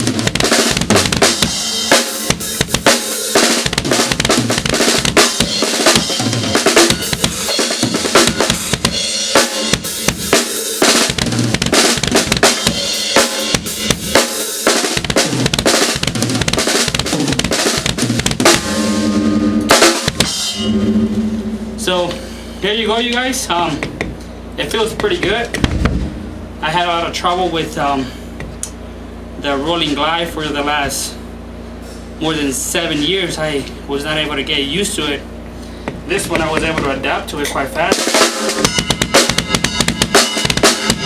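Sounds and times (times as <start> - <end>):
bass drum hits: 15.0 - 22.5, 25.6 - 26.7
ringing tone: 20.5 - 22.1
snare drum hits: 25.6 - 26.4
rimshot hits: 25.6 - 26.6.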